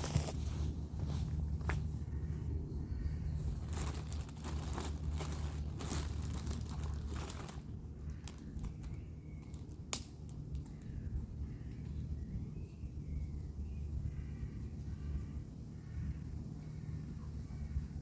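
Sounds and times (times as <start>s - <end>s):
crinkling and rustling handling: 0.0s - 10.9s
steady low rumble: 0.0s - 18.0s.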